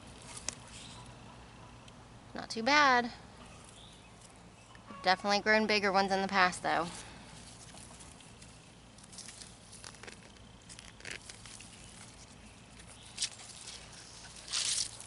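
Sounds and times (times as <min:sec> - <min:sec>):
digging in damp soil: 0:00.0 - 0:01.2, 0:06.6 - 0:15.0.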